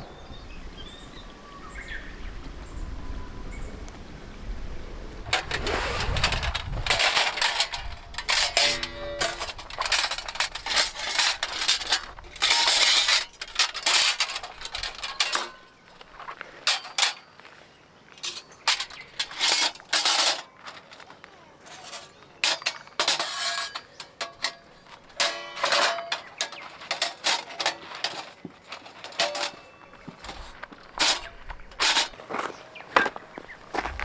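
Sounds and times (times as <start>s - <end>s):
metal cookware clattering: 5.3s - 17.3s, 18.2s - 21.0s, 21.6s - 32.3s.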